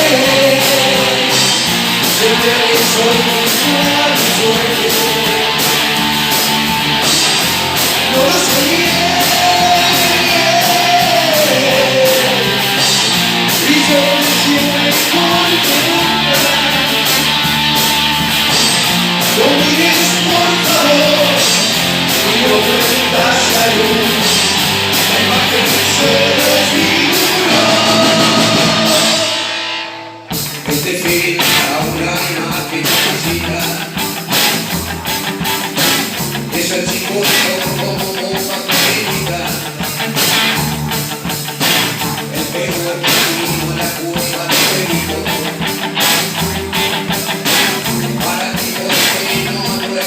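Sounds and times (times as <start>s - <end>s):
person singing: 0.0s - 6.3s, 7.0s - 29.6s, 30.5s - 34.3s, 36.5s - 40.0s, 42.2s - 45.9s, 47.0s - 50.0s
rock band playing live: 0.0s - 50.0s.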